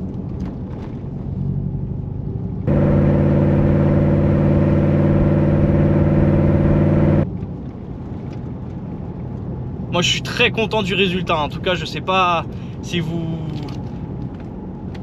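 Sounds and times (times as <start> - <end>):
truck exhaust drone: 2.6 - 7.2.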